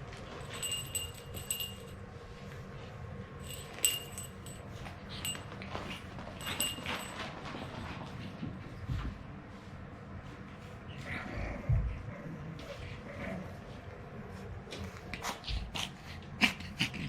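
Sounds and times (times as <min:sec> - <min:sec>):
low steady rumble: 0:00.0 - 0:16.9
small bell jingling: 0:00.3 - 0:02.0, 0:03.4 - 0:05.7, 0:06.4 - 0:07.3.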